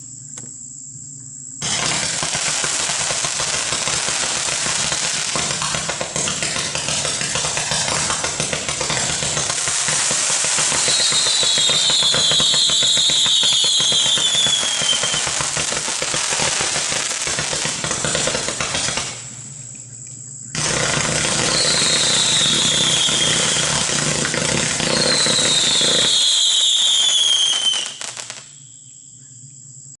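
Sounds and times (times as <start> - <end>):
firework whistles falling in pitch: 1.6 - 19.3, 20.6 - 29.0
firework barrage with crackle: 1.6 - 19.8, 20.5 - 28.6.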